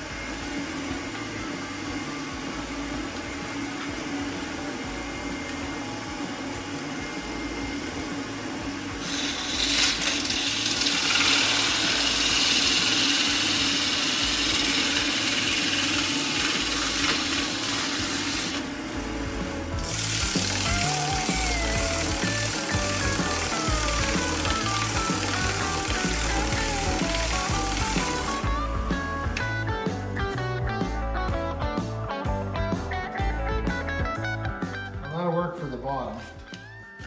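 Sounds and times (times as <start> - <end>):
wood lathe humming: 0.0 - 29.0
sandpaper hissing on wood: 9.0 - 18.6, 19.8 - 28.5.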